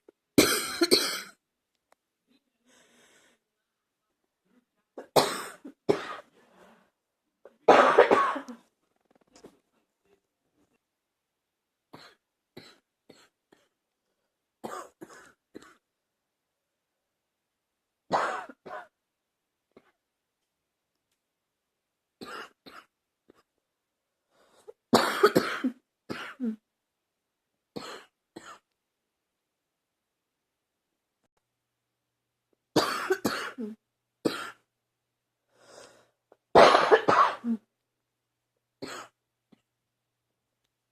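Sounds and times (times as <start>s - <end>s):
person coughing: 0.4s - 1.4s, 5.0s - 6.3s, 7.6s - 8.6s, 25.0s - 26.6s, 32.8s - 34.6s, 36.6s - 37.7s.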